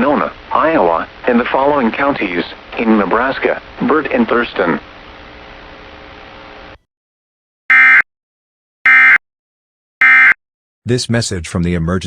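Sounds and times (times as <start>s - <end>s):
two-tone digital data bursts: 7.7s - 8.0s, 8.9s - 9.2s, 10.0s - 10.4s.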